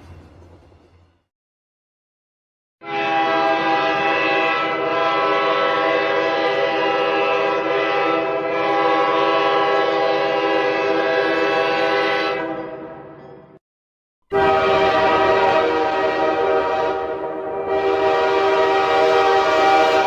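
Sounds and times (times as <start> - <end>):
train horn blast: 2.8 - 13.1, 14.3 - 20.0.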